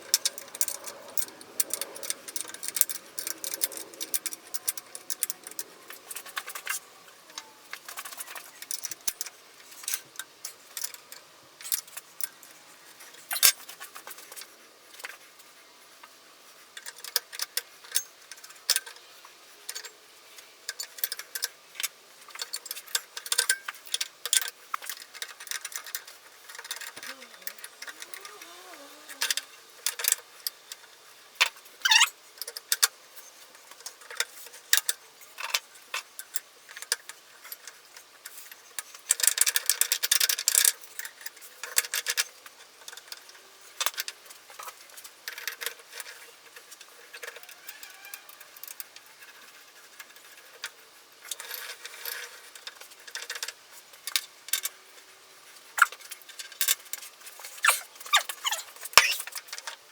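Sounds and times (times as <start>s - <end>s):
metal tools clinking and rattling: 0.0s - 6.8s
rising squeak: 57.6s - 59.2s.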